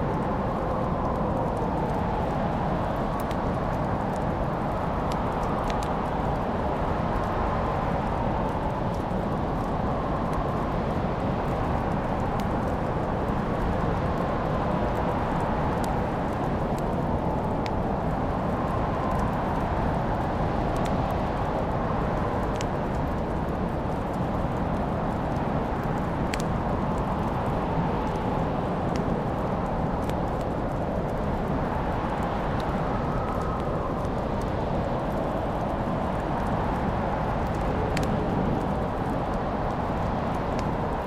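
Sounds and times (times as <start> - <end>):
wood fire crackling: 0.0 - 41.0.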